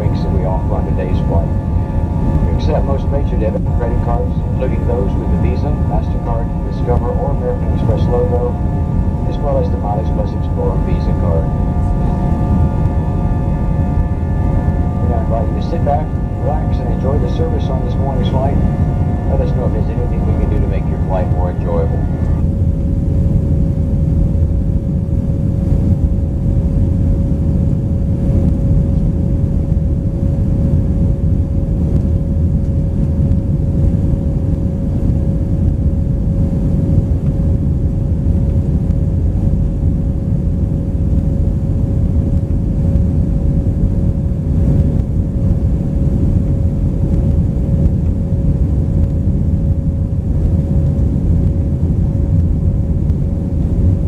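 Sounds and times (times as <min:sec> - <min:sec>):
airplane cabin drone: 0:00.0 - 0:54.0
constant hum: 0:00.0 - 0:54.0.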